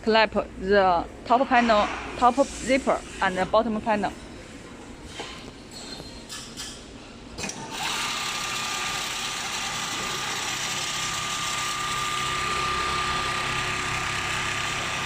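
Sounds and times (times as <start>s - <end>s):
sewing machine whine: 7.5s - 15.0s.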